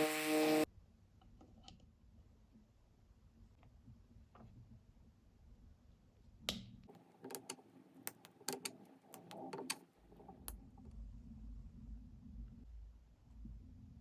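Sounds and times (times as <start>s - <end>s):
light sharp clicks and taps: 6.5s - 9.8s.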